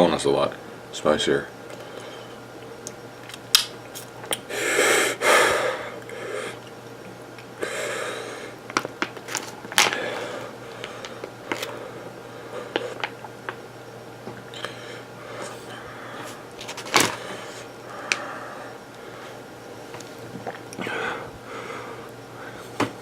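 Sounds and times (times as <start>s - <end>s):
person breathing hard through mouth: 4.5s - 6.6s, 7.6s - 8.6s, 9.8s - 13.0s, 14.5s - 19.4s, 20.8s - 22.8s.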